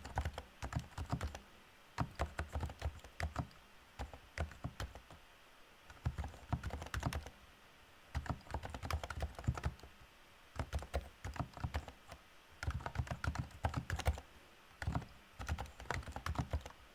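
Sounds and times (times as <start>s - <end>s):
keyboard typing: 0.0s - 1.4s, 2.0s - 5.2s, 5.9s - 7.3s, 8.1s - 9.9s, 10.6s - 14.2s, 14.8s - 16.8s.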